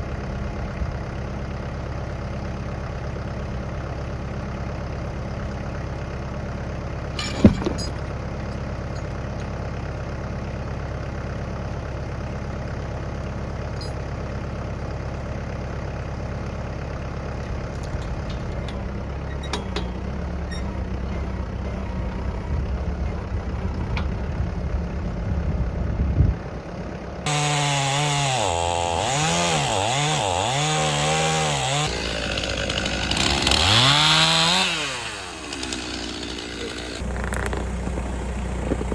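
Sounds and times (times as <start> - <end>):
engine idling: 0.0 - 38.9
chainsaw cutting log: 27.2 - 38.9.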